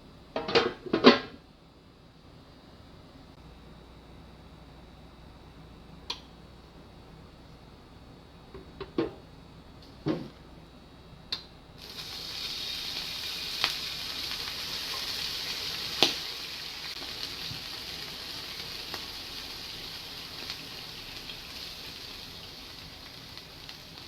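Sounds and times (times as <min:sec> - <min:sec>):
frying pan sizzling: 0:11.8 - 0:24.0.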